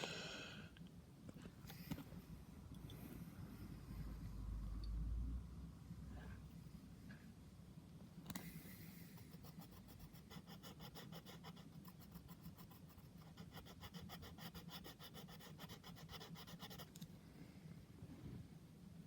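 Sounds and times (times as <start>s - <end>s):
pencil scratching on paper: 9.2s - 17.0s.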